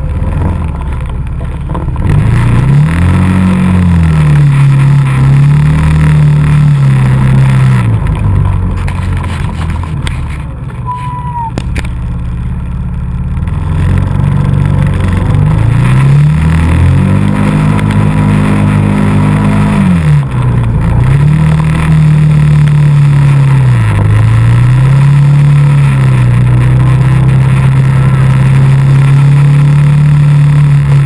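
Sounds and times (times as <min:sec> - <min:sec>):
atv engine revving: 0:00.0 - 0:31.0.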